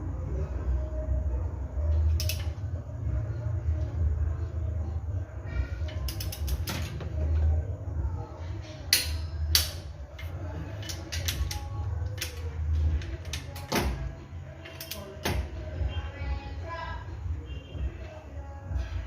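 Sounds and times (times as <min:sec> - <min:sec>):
wrench metallic clicks and knocks: 0:02.1 - 0:02.6, 0:05.9 - 0:07.0, 0:08.9 - 0:15.5.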